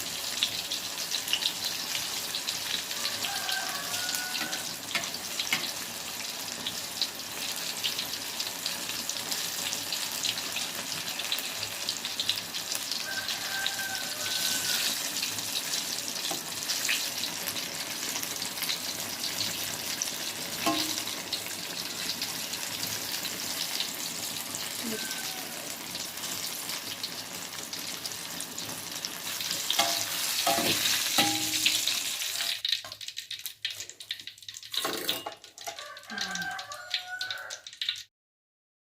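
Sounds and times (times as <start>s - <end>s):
food sizzling in hot oil: 0.0s - 38.1s
utensil knocking against pan: 20.7s - 21.1s.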